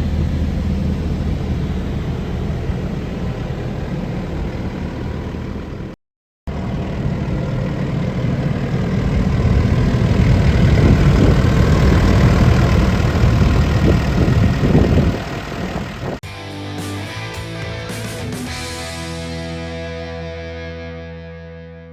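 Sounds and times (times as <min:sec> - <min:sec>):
excavator diesel engine running: 0:00.0 - 0:19.8
guitar music: 0:16.2 - 0:21.9.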